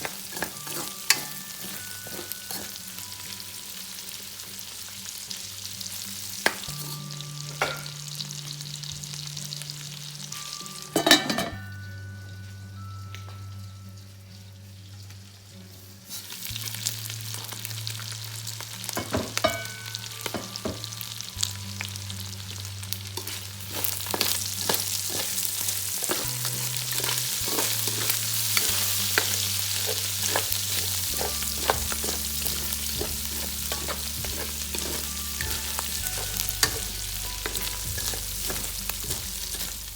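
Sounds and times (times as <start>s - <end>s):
utensil scraping a pan: 0.0s - 2.8s, 23.2s - 39.9s
food sizzling in a pan: 0.0s - 39.9s.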